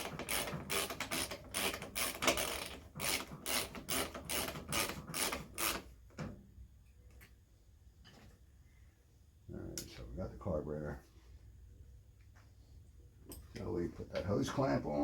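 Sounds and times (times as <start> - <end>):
ratchet wrench clicking: 0.0 - 5.8.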